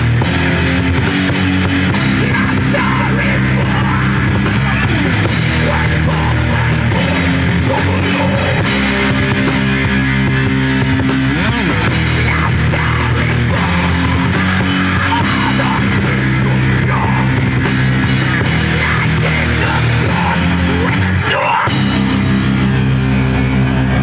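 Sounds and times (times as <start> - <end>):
heavy metal band playing live: 0.0 - 24.0.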